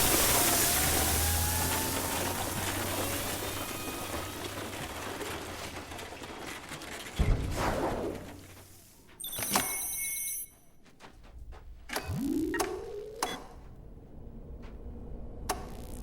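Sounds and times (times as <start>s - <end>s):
rising whine tones: 0.0s - 4.8s, 12.0s - 16.0s
low hum: 11.2s - 16.0s.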